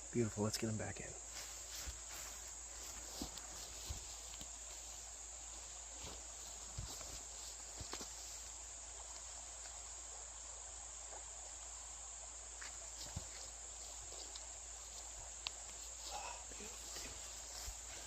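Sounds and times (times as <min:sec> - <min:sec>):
insects chorus: 0:00.0 - 0:18.0
creek water rushing: 0:01.7 - 0:18.0
faint clicks: 0:15.4 - 0:15.8.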